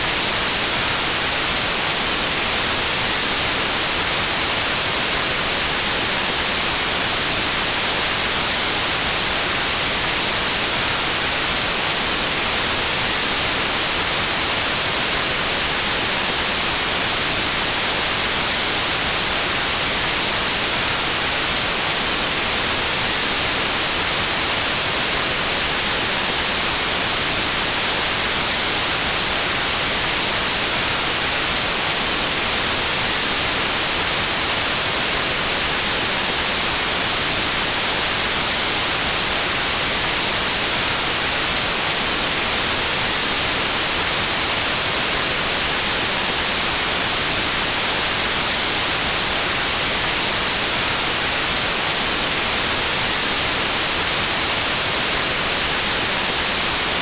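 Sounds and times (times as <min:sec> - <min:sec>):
white noise hiss: 0:00.0 - 0:57.0.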